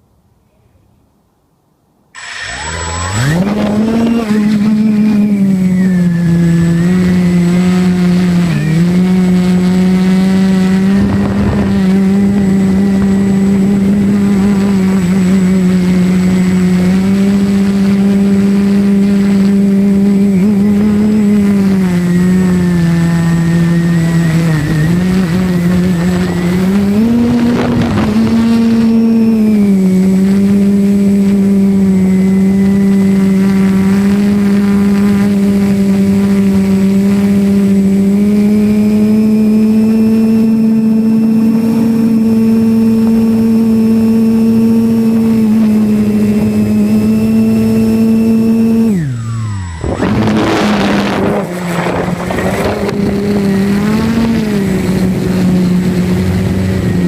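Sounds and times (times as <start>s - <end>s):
drone propellers humming: 2.1s - 57.0s.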